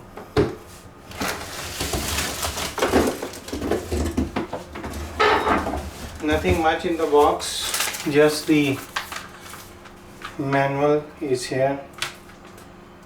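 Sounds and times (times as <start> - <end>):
cardboard rustling and scraping: 1.1 - 10.4.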